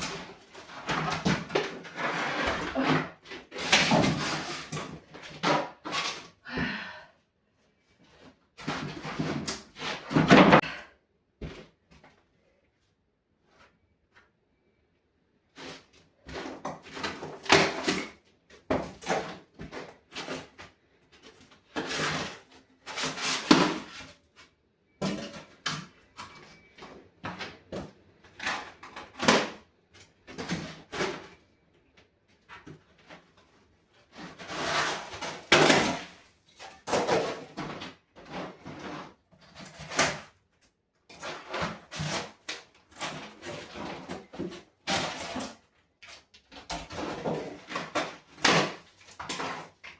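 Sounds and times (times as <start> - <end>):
wooden floorboards scraping and creaking: 0.0 - 6.0.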